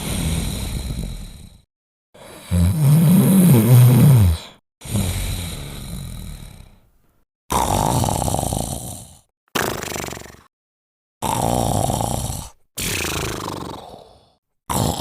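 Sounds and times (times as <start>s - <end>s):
dog snoring: 7.5s - 10.5s, 11.2s - 15.0s.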